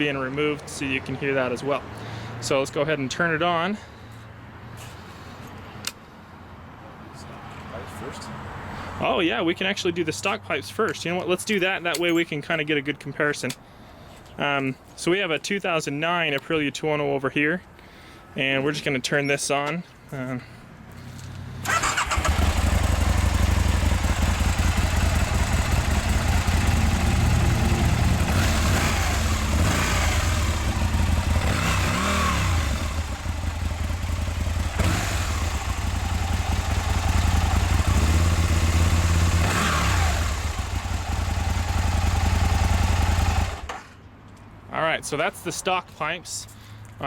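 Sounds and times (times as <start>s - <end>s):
motorcycle engine idling and revving: 20.9s - 44.0s.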